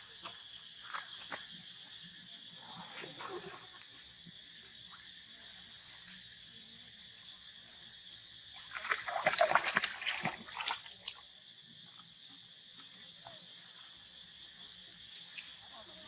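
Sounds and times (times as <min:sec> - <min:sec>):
water splashing and sloshing: 0:08.5 - 0:11.5.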